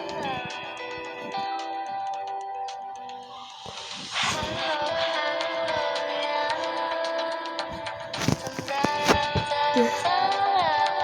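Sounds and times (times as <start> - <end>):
ringtone music: 0.0 - 11.0
whoosh: 3.3 - 5.8.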